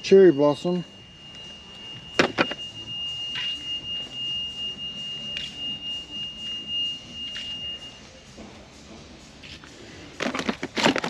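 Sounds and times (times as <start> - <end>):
high-pitched electronic beep: 0.0 - 8.3.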